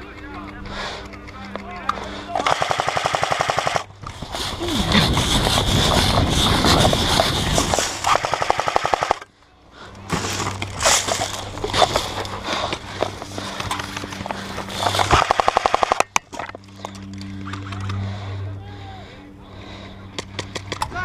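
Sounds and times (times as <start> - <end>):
airsoft gun automatic bursts: 2.4 - 9.2, 14.7 - 16.1.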